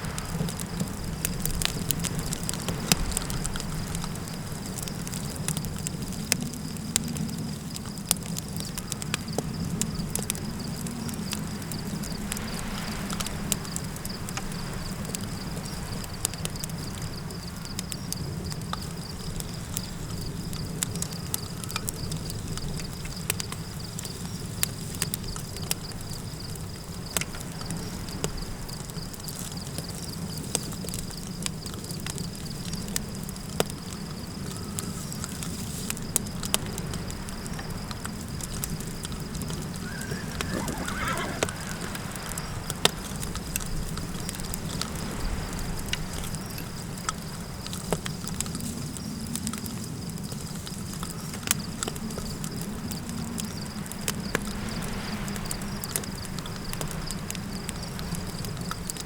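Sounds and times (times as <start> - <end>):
campfire crackling: 0.0 - 54.7
low wind rumble: 38.3 - 49.2
horse whinnying: 39.7 - 42.6.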